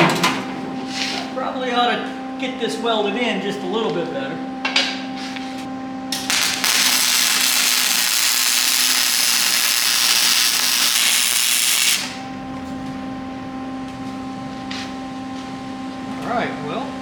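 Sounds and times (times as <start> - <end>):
electrical hum: 0.0 - 17.0
welding arc crackling: 6.1 - 12.4.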